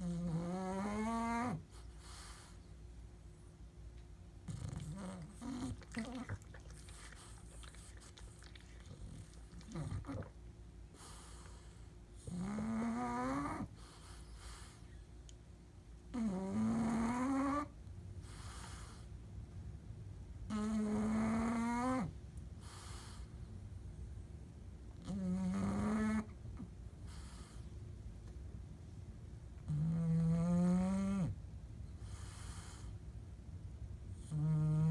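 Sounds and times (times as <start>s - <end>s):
dog snoring: 0.0s - 2.5s, 4.4s - 14.8s, 16.1s - 19.1s, 20.5s - 23.3s, 25.0s - 27.6s, 29.6s - 31.4s, 34.1s - 34.9s
dog breathing: 4.4s - 15.0s, 16.2s - 19.2s, 20.7s - 23.6s, 27.0s - 27.8s, 31.9s - 33.0s.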